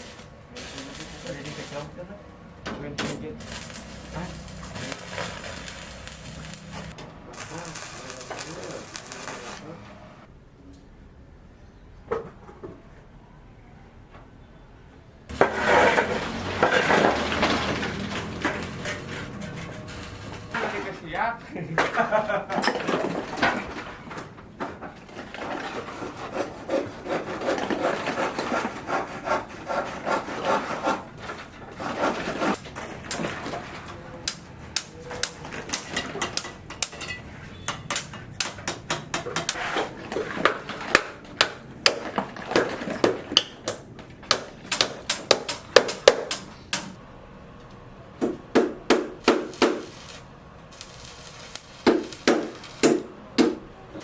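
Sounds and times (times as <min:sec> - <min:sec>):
sawing wood by hand: 0:15.3 - 0:20.9, 0:25.1 - 0:33.7.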